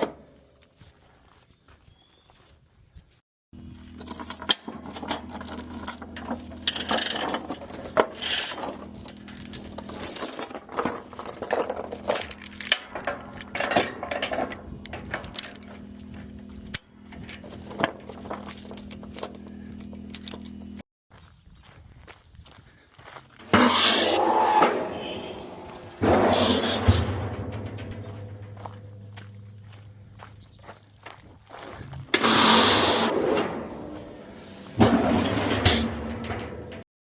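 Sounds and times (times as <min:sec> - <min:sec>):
engine hum: 0:03.6 - 0:20.8, 0:23.3 - 0:35.7
chains rattling against metal: 0:03.8 - 0:16.2, 0:17.0 - 0:20.6, 0:25.8 - 0:29.8.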